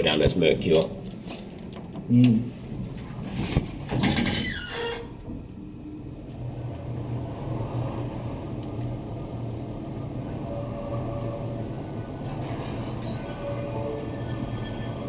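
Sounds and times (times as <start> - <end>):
elevator hum and rumble: 0.0 - 15.0
brief falling squeal: 13.0 - 15.0.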